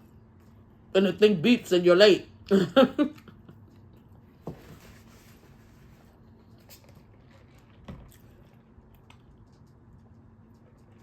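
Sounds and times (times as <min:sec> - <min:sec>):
soft chewing: 0:00.0 - 0:00.9, 0:03.1 - 0:04.4, 0:05.4 - 0:11.0.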